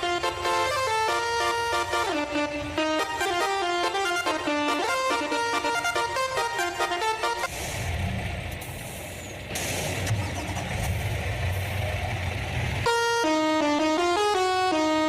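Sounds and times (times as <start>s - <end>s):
melody of stepping tones: 0.0s - 7.4s
road traffic noise: 0.0s - 15.0s
truck engine rumbling: 0.0s - 15.0s.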